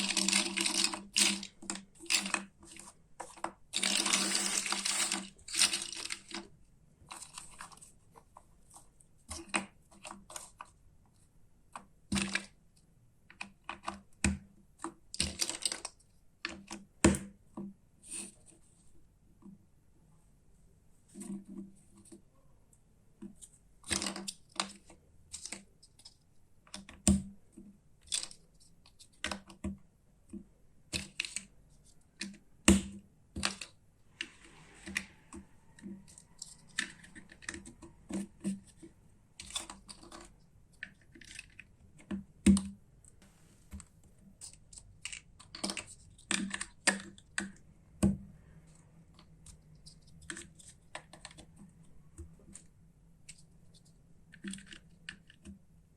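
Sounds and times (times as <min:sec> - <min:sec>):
plastic toy parts clicking: 0:03.4 - 0:06.5.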